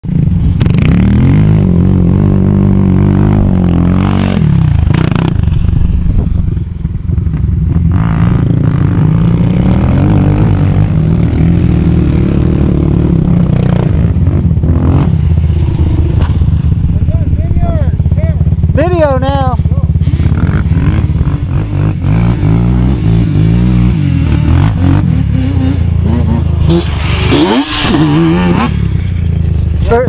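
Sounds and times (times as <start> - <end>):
atv engine revving: 0.0 - 30.0.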